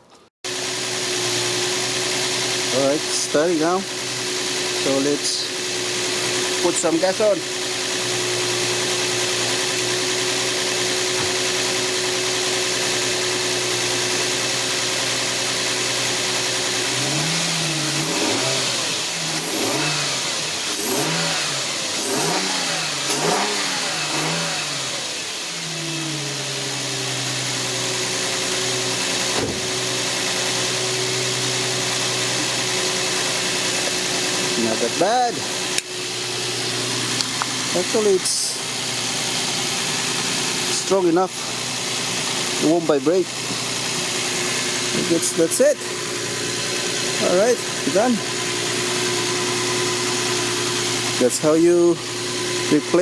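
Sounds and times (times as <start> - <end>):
car engine idling and revving: 0.0 - 53.0.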